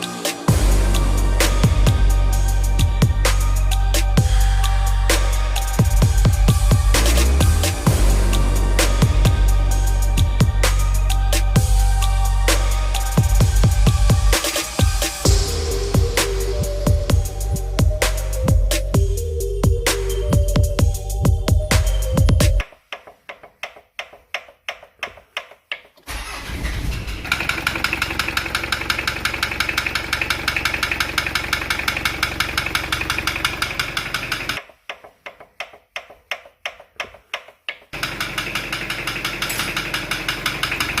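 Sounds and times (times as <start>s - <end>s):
car engine cranking: 26.0s - 34.6s, 38.0s - 41.0s
engine idling with knock: 38.0s - 41.0s.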